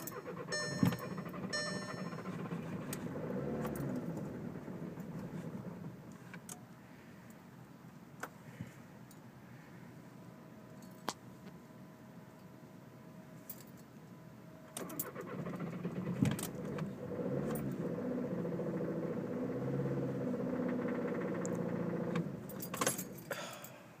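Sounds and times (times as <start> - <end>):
car engine cranking: 0.0 - 6.5, 14.8 - 23.3
keys jangling and clicking: 13.4 - 13.9.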